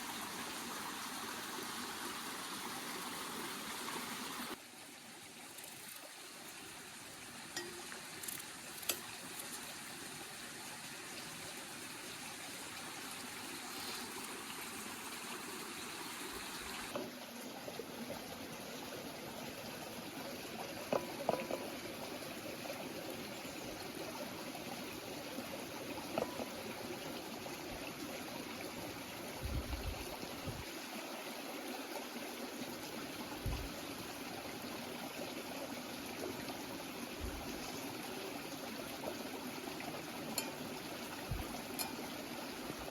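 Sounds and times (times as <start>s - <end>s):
water running: 36.0s - 42.9s.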